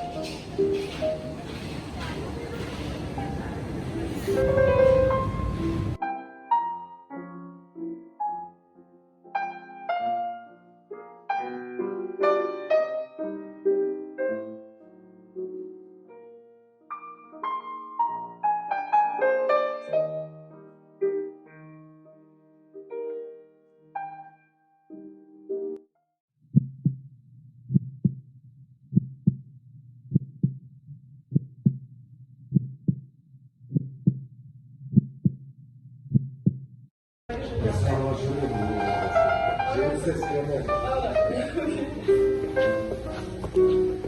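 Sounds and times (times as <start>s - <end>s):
soft piano music: 0.0s - 25.8s, 37.5s - 44.0s
heartbeat sound effect: 26.5s - 27.1s, 27.7s - 28.3s, 28.9s - 29.5s, 30.1s - 31.9s, 32.5s - 33.1s, 33.7s - 34.3s, 34.9s - 35.5s, 36.1s - 36.8s.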